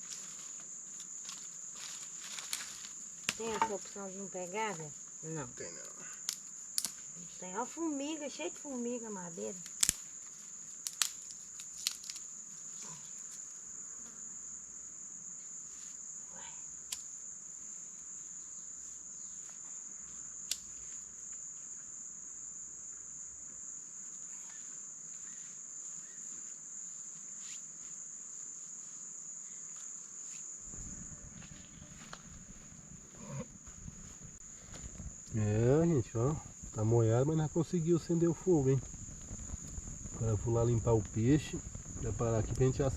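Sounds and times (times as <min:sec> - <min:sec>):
insect chorus chirring: 0:00.0 - 0:42.9
low rumble: 0:38.8 - 0:42.9.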